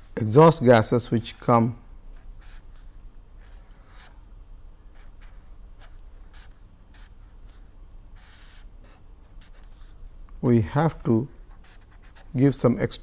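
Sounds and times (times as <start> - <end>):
pen scratching on surface: 8.2 - 8.7, 11.5 - 12.3.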